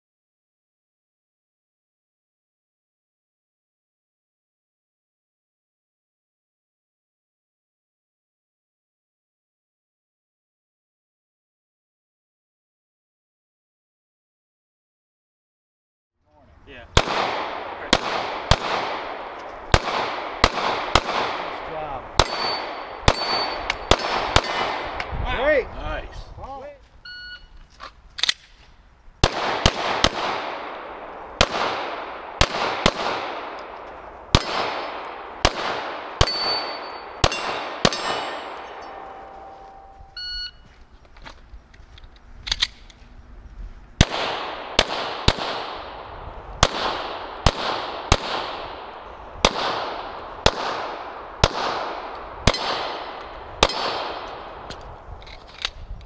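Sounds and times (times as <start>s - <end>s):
pistol shots echoing: 17.0s - 25.1s, 29.2s - 40.0s, 44.0s - 54.8s.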